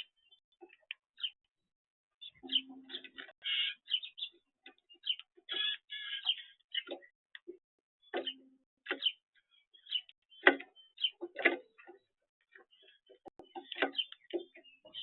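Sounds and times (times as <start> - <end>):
birds chirping: 0.0 - 15.0.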